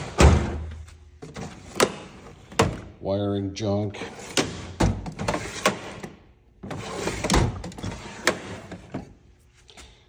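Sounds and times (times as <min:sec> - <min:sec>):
metal drawers sliding: 0:00.0 - 0:02.9, 0:04.0 - 0:09.1.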